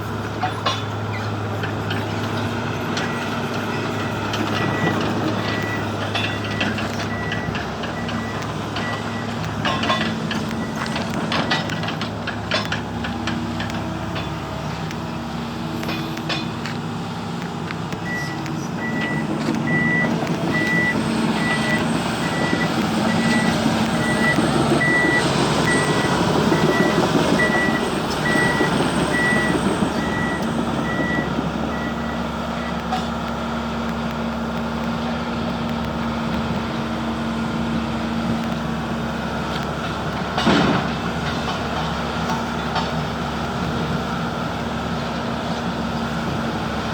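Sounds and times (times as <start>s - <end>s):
excavator diesel engine running: 0.0s - 46.9s
warning alarm beeping: 4.0s - 11.2s, 18.0s - 32.8s.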